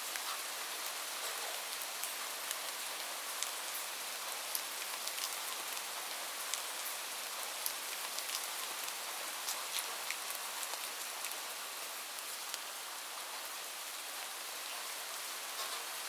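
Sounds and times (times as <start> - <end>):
light rain falling: 0.0 - 16.0.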